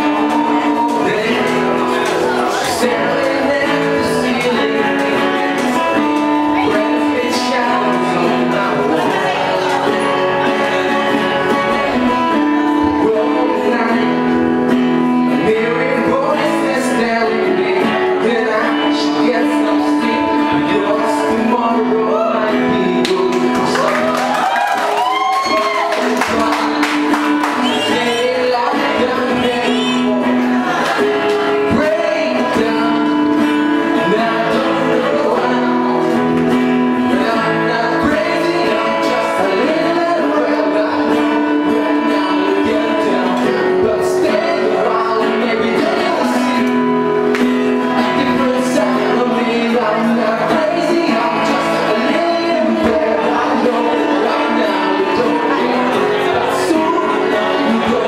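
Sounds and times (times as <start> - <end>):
guitar: 0.0 - 58.0
live band playing: 0.0 - 58.0
person singing: 0.0 - 58.0.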